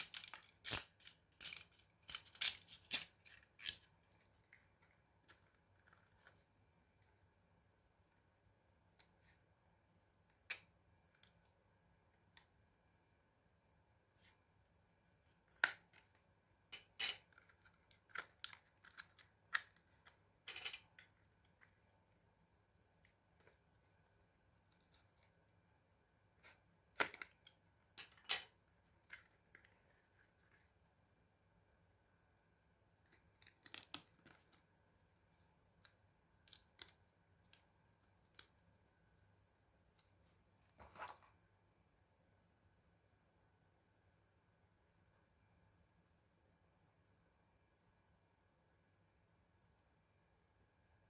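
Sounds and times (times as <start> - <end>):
small hard parts clicking: 0.0 - 3.8
small hard parts scraping: 0.0 - 3.9.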